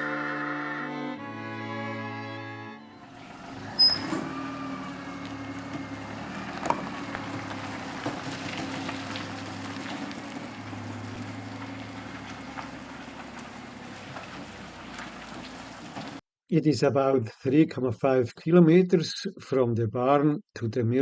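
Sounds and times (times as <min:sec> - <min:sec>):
motor droning: 0:00.0 - 0:16.2.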